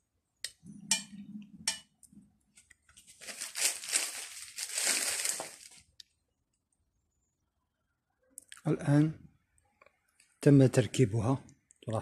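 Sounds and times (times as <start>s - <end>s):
plastic crinkling and rustling: 2.9s - 5.9s.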